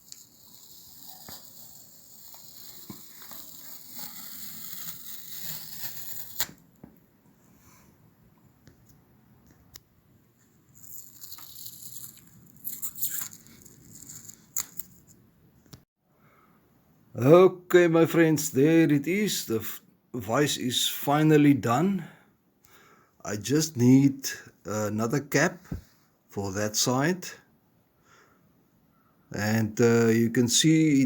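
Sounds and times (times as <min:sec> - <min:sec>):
aerosol spray can hissing: 0:00.0 - 0:06.3.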